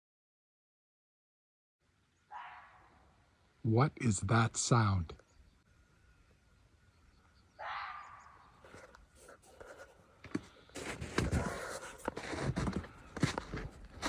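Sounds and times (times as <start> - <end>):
crunching footsteps: 8.5 - 14.0
rustling: 8.6 - 14.0.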